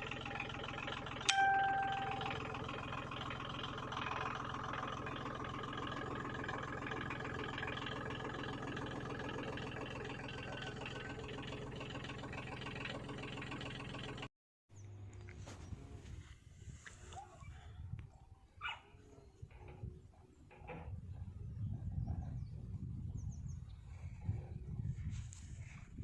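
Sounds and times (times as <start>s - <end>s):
backhoe engine running: 0.0s - 16.3s.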